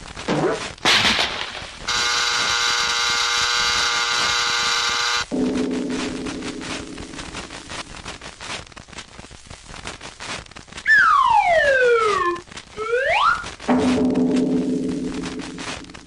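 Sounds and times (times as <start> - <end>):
crackling clicks: 0.0 - 5.3, 6.1 - 11.0, 12.0 - 16.0
gong hum: 5.3 - 7.4
whistle gliding down: 10.9 - 13.5.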